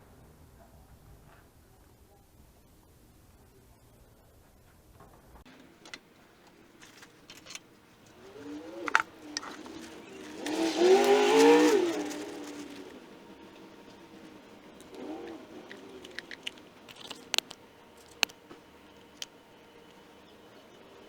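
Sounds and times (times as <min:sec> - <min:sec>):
car engine revving: 0:05.5 - 0:21.0
clicks: 0:14.8 - 0:20.1.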